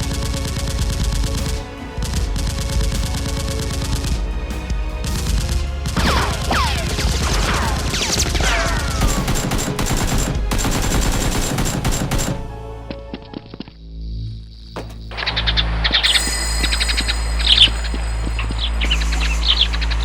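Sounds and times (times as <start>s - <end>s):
background music: 0.0s - 20.0s
single gunshots: 5.2s - 12.4s
automatic gunfire: 5.3s - 12.4s
falling whistling tones: 15.1s - 20.0s.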